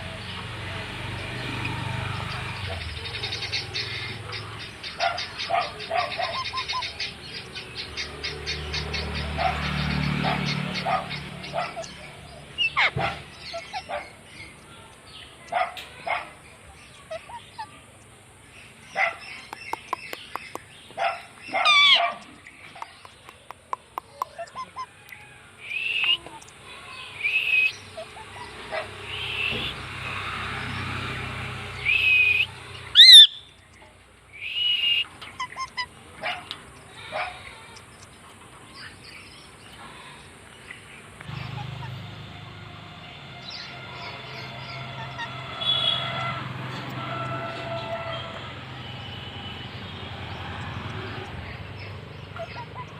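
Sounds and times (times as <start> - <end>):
parakeet calling: 2.2 - 14.6, 18.8 - 23.2, 24.0 - 25.0, 25.6 - 30.9, 31.7 - 33.6, 34.3 - 36.0, 43.4 - 46.4, 50.3 - 52.9
parakeet squawks: 4.9 - 7.1, 19.1 - 22.2, 31.8 - 33.5, 34.8 - 35.9
soft bird chirps: 16.5 - 29.8.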